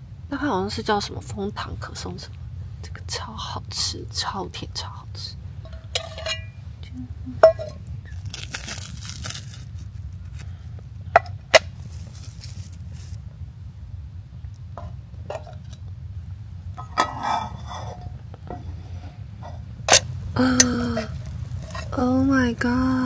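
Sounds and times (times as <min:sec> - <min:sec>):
tableware clattering: 0:05.7 - 0:06.6, 0:07.4 - 0:07.8, 0:16.8 - 0:18.1
tableware clinking: 0:05.7 - 0:06.6, 0:07.4 - 0:07.8
crinkling: 0:07.6 - 0:13.4, 0:16.7 - 0:23.0.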